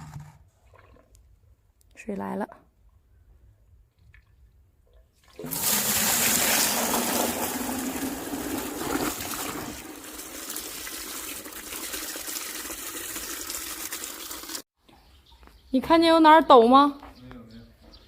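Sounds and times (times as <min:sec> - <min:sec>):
water rushing from a hose: 0:05.4 - 0:14.6.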